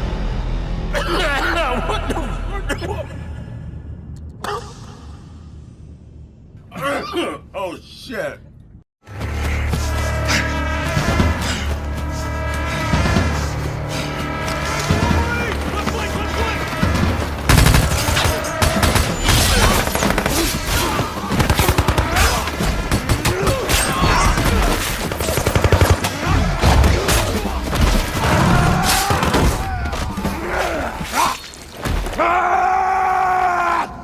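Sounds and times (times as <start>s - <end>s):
music: 0.0s - 4.2s, 9.0s - 30.8s
rapid gunfire: 17.5s - 27.1s.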